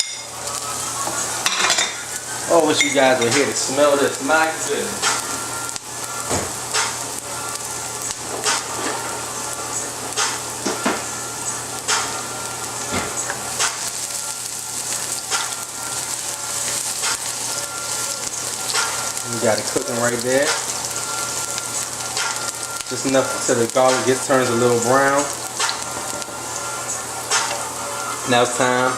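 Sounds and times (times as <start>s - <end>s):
garlic and onion sizzling in oil: 0.0s - 28.9s.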